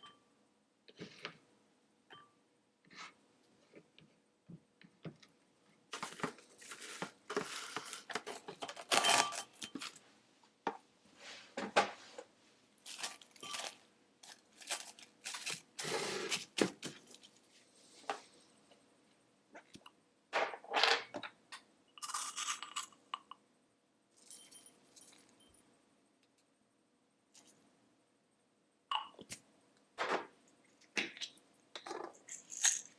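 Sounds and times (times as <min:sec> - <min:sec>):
rustling and scraping: 0:05.9 - 0:10.1, 0:11.1 - 0:18.5.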